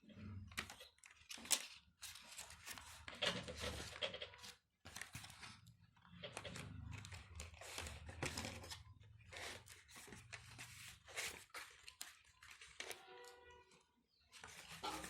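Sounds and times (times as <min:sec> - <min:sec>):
packaging rustling and tearing: 0:06.3 - 0:13.3.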